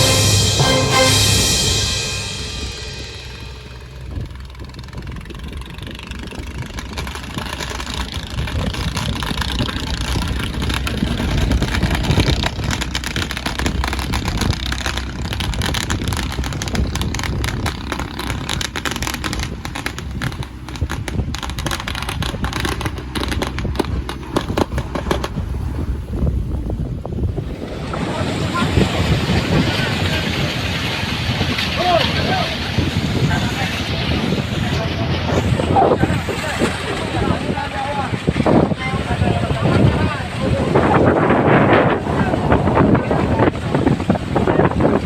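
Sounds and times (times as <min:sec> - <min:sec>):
wind buffeting microphone: 0:03.0 - 0:45.0
boat engine running: 0:03.3 - 0:27.8.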